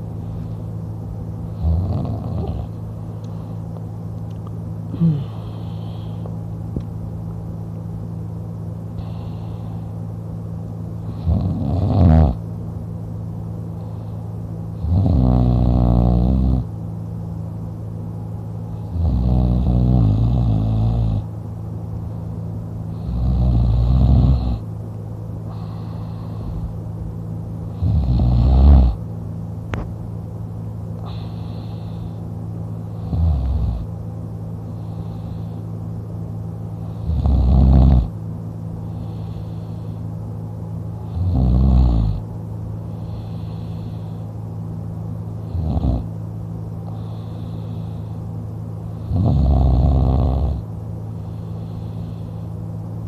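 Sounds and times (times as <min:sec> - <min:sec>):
steady low hum: 0:00.0 - 0:53.0
man snoring: 0:01.5 - 0:02.8, 0:04.9 - 0:06.2, 0:11.0 - 0:12.4, 0:14.8 - 0:16.7, 0:18.8 - 0:21.3, 0:22.9 - 0:24.6, 0:27.7 - 0:29.0, 0:32.8 - 0:33.9, 0:36.8 - 0:38.2, 0:41.0 - 0:42.2, 0:45.4 - 0:46.1, 0:48.9 - 0:50.7.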